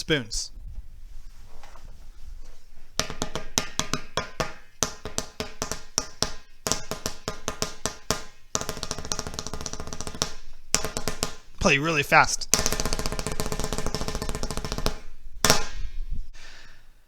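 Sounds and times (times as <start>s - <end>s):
spoons drumming on exercise ball: 2.4s - 16.0s.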